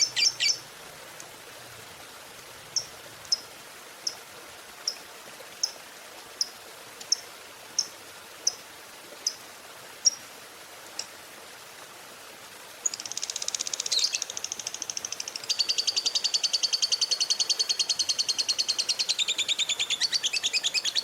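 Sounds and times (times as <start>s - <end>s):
bird chirping high: 0.0s - 0.6s, 12.9s - 14.6s
steady hiss: 0.0s - 21.0s.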